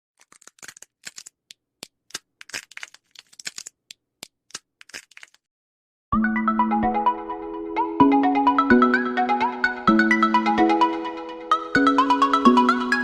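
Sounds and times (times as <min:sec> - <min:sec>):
seed husks cracking: 0:00.2 - 0:05.4.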